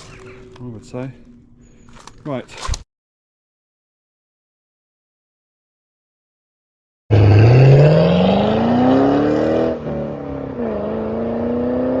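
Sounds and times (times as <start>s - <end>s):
racing car engine accelerating: 7.1s - 12.0s.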